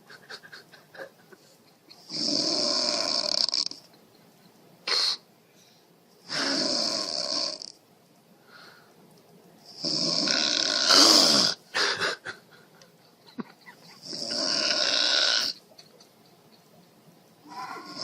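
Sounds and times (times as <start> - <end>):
person snoring and snorting: 2.1 - 3.8, 6.2 - 7.8, 9.7 - 11.6, 14.0 - 15.6, 17.5 - 18.0.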